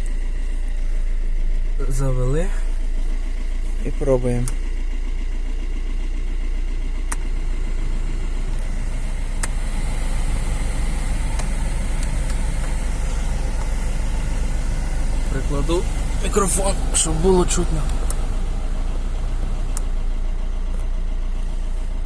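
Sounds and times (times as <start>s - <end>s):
car engine idling: 0.0s - 22.0s
sharp clicks: 11.2s - 12.8s.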